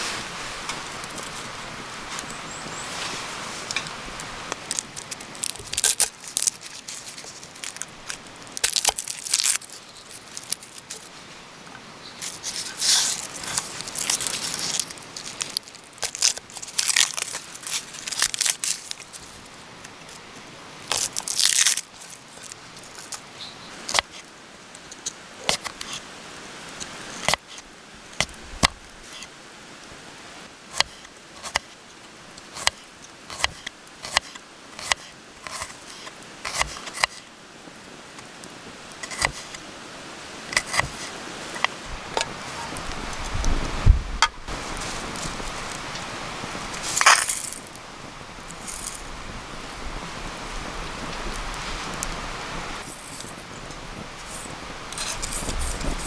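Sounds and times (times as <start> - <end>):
crinkling and tearing: 4.5 - 11.1, 12.2 - 20.2, 20.8 - 23.2, 46.6 - 47.8, 48.4 - 49.1, 54.1 - 56.0.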